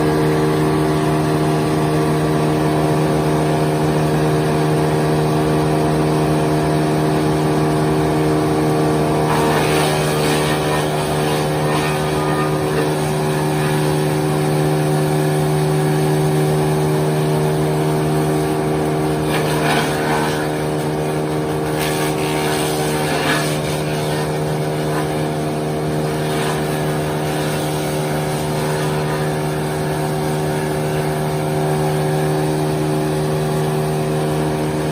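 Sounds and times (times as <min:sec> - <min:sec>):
wood chipper engine droning: 0:00.0 - 0:34.9
harsh chipping noise: 0:09.0 - 0:32.1.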